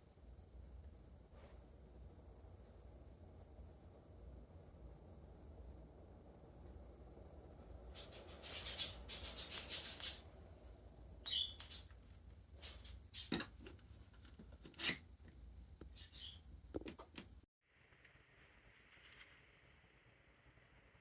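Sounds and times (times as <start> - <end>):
steady low hum: 0.0 - 17.5
rubbing and rustling: 7.9 - 10.3, 11.6 - 15.2.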